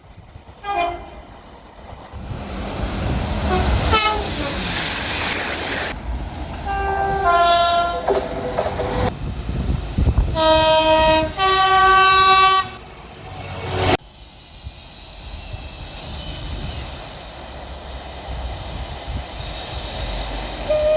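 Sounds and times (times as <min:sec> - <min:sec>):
train running: 0:00.0 - 0:20.9
two-tone train horn: 0:00.6 - 0:01.3, 0:03.4 - 0:04.4, 0:06.7 - 0:09.1, 0:10.3 - 0:14.0, 0:20.7 - 0:20.9.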